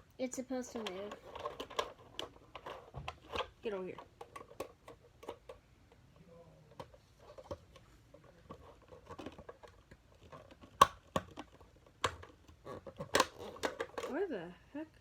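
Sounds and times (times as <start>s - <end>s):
plastic toy parts clicking: 0.7s - 5.6s, 8.5s - 14.2s.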